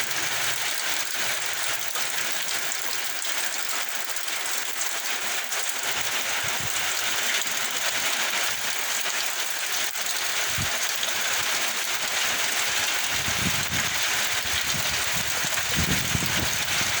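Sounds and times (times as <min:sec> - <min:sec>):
heavy rain pouring: 0:00.0 - 0:17.0
wind gusts on microphone: 0:13.1 - 0:17.0.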